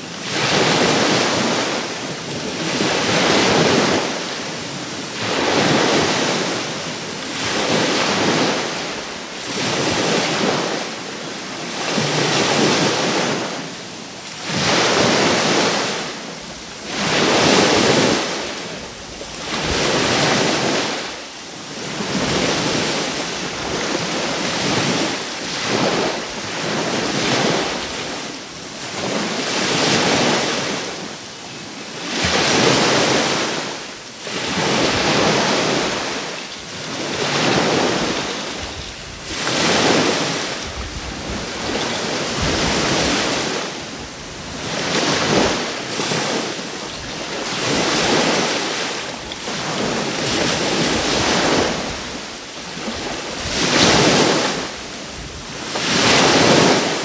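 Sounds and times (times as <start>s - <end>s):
small sea waves washing ashore: 0.0s - 57.0s
wind buffeting microphone: 34.6s - 48.6s.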